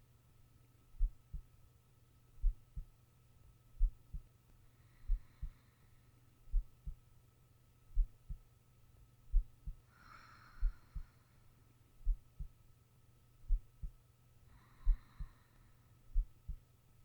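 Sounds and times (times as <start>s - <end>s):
heartbeat thumps: 1.0s - 1.5s, 2.4s - 2.9s, 3.8s - 4.3s, 5.1s - 5.5s, 6.5s - 7.0s, 7.9s - 8.4s, 9.3s - 9.8s, 10.6s - 11.1s, 12.0s - 12.6s, 13.4s - 14.0s, 14.8s - 15.3s, 16.1s - 16.6s
soft breathing: 4.6s - 7.0s, 9.3s - 12.5s, 13.5s - 16.6s.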